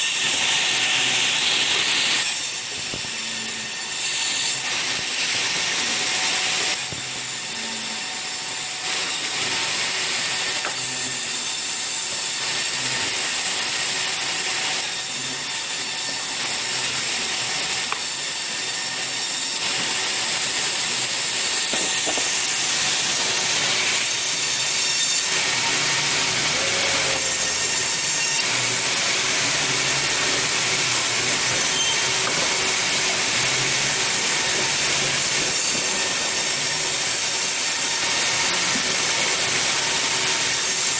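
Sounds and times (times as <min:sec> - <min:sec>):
sawmill saws cutting wood: 0:00.0 - 0:40.9.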